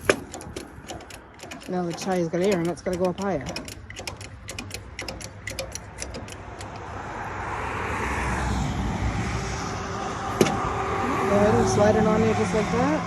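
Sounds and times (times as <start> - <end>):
quick clicks: 0.0 - 7.0
passing vehicle engine and road noise: 0.0 - 13.0.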